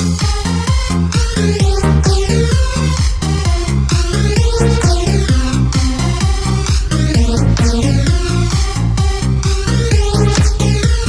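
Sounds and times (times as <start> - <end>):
electronic dance music: 3.0 - 9.2.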